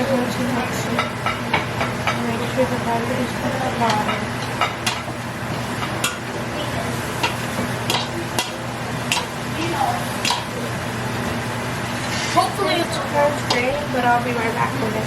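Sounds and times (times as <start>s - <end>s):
utensil clicking against pot: 7.2s - 9.4s, 10.2s - 10.5s.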